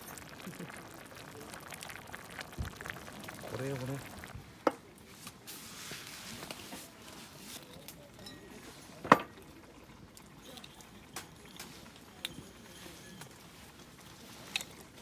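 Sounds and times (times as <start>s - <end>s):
cookware clicking and knocking: 8.2s - 9.5s, 10.3s - 13.5s.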